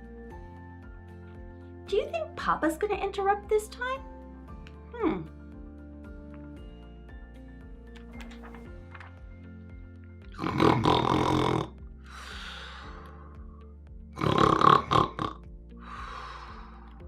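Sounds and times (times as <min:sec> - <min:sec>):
soft background music: 0:00.0 - 0:17.0
man imitating snoring: 0:10.4 - 0:11.8, 0:14.2 - 0:15.4.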